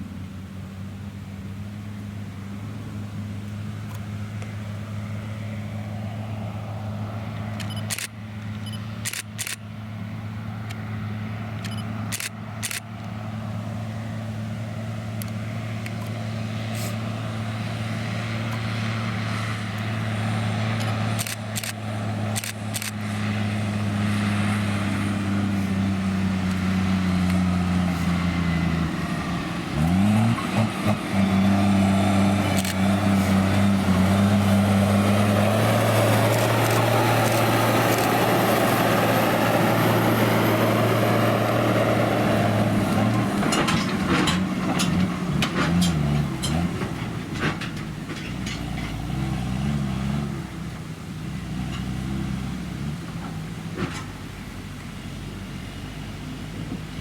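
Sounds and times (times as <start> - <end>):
combine harvester engine hum: 0.0 - 57.0
sharp clicks: 7.5 - 9.6, 11.6 - 13.1, 20.8 - 23.0, 32.5 - 32.9.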